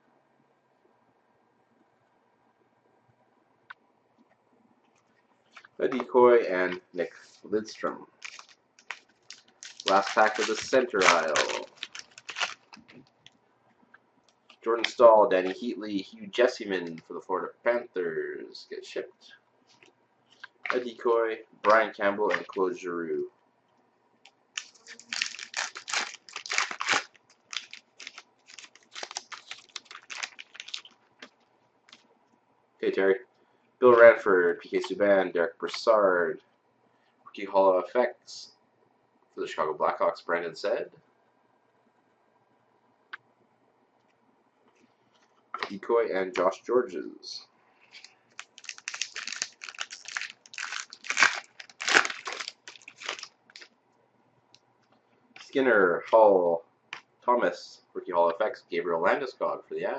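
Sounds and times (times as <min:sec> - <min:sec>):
foil wrapper crinkling and tearing: 0:08.2 - 0:13.0, 0:24.6 - 0:31.1, 0:47.9 - 0:53.7.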